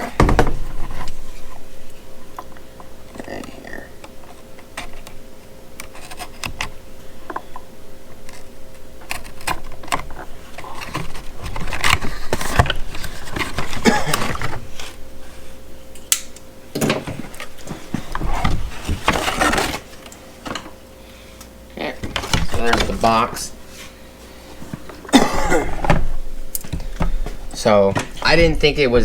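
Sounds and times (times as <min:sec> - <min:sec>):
cardboard rustling and scraping: 0:05.8 - 0:07.5, 0:08.1 - 0:15.6, 0:17.0 - 0:20.8, 0:21.9 - 0:25.0.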